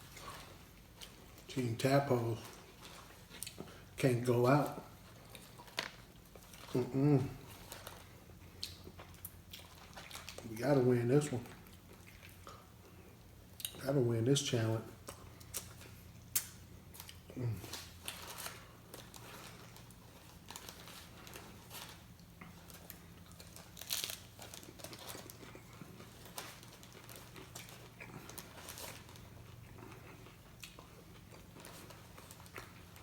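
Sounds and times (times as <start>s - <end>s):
biting and chewing: 4.8s - 10.5s, 15.0s - 33.0s
paper wrapper crinkling: 17.7s - 29.3s.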